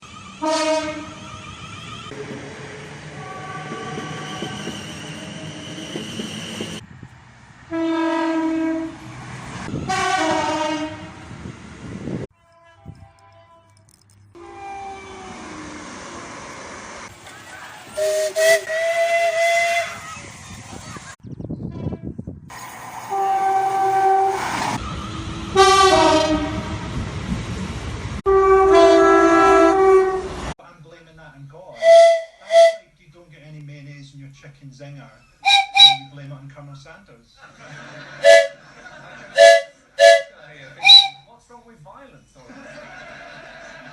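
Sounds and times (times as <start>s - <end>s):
passing train rumble: 0.0s - 12.3s, 13.0s - 30.6s, 37.6s - 41.2s
train horn: 0.4s - 1.2s, 3.1s - 5.3s, 7.7s - 9.0s, 9.8s - 11.3s, 14.4s - 15.9s, 23.1s - 24.5s, 25.5s - 26.9s, 28.3s - 30.5s, 31.8s - 32.8s, 35.4s - 36.1s, 38.2s - 38.6s, 39.4s - 41.2s.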